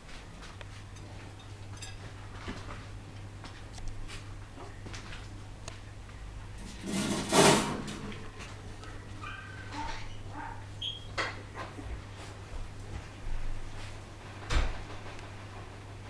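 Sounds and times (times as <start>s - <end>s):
low electrical hum: 0.0s - 16.0s
puppies squeaking and whimpering: 8.8s - 11.1s.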